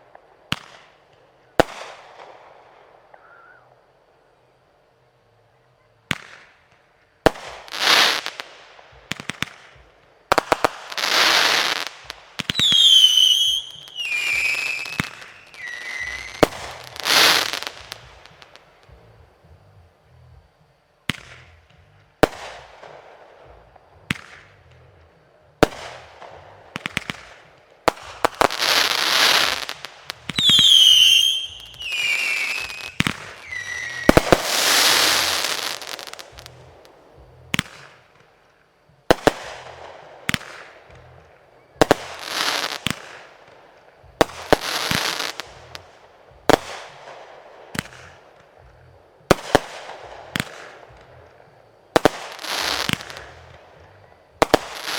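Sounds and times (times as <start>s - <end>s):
crackling hiss bursts: 6.0s - 54.9s
falling whistling tones: 12.5s - 18.2s, 30.3s - 36.3s.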